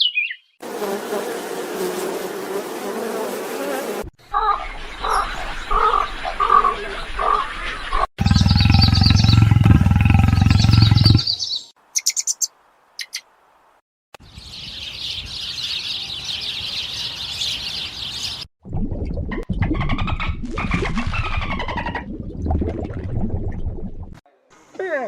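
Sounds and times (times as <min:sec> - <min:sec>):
loud low rumbling animal call: 0:08.2 - 0:11.3
high-pitched chirping chorus: 0:08.2 - 0:13.2.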